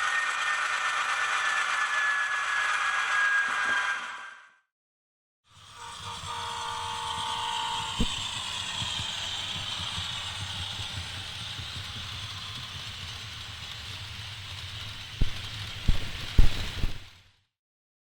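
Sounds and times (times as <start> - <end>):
hiss: 5.6 - 17.2.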